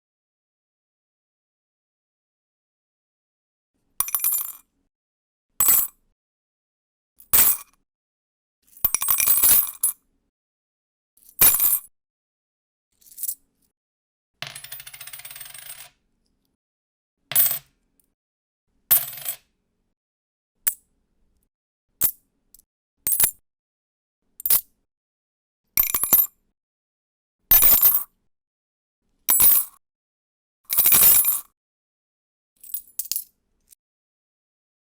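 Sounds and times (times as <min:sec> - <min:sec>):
coins dropping and jingling: 0:13.0 - 0:13.4
coins clinking on hard surface: 0:14.4 - 0:15.9, 0:17.3 - 0:17.6, 0:18.9 - 0:19.4.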